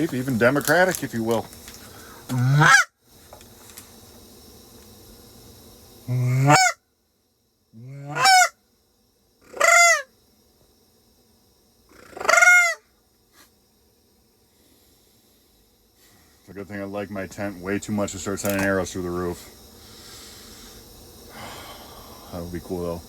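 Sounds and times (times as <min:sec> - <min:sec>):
goose honking: 0:02.4 - 0:02.9, 0:06.4 - 0:06.8, 0:08.1 - 0:08.5, 0:09.6 - 0:10.0, 0:12.1 - 0:12.8.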